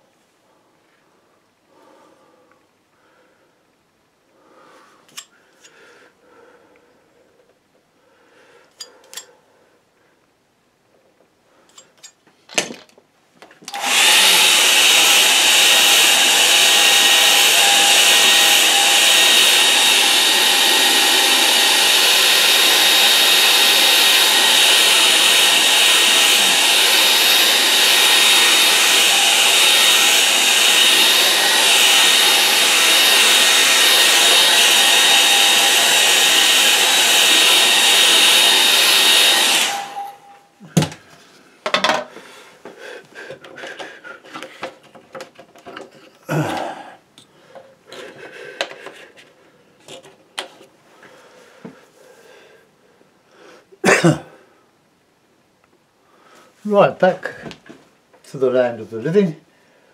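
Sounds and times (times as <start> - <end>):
hair dryer blowing: 13.7 - 41.0.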